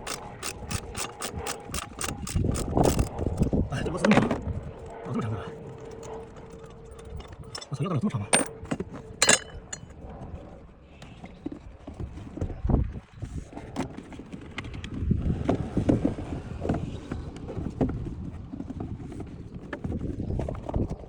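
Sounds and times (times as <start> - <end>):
tools and plastic parts clattering: 6.6 - 9.9.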